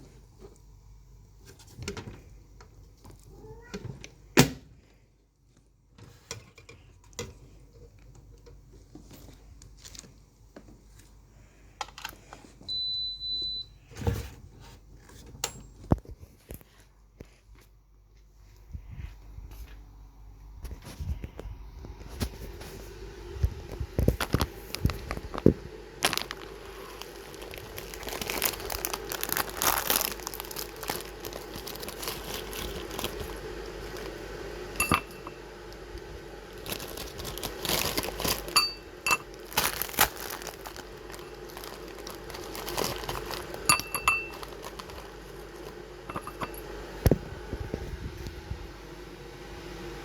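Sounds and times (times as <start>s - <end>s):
faint steady hum: 0.0s - 50.0s
food packaging crinkling: 26.0s - 46.4s
utensils clinking on dishes: 34.8s - 35.4s, 38.3s - 39.7s, 42.7s - 45.0s, 46.0s - 46.7s.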